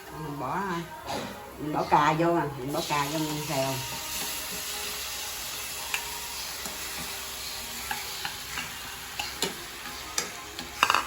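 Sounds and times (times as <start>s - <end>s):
tomatoes sizzling in oil: 0.0s - 11.0s.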